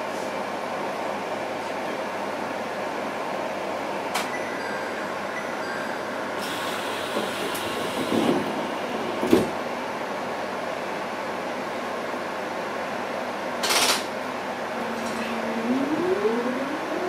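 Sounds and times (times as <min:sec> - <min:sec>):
train equipment hum: 0:14.4 - 0:17.0.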